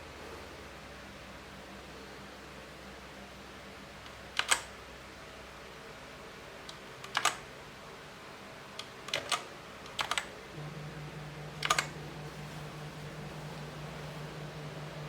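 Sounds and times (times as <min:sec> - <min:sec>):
low steady hum: 0:00.0 - 0:15.0
mechanical keyboard key clicks: 0:04.4 - 0:04.7, 0:07.0 - 0:07.4, 0:09.1 - 0:10.3.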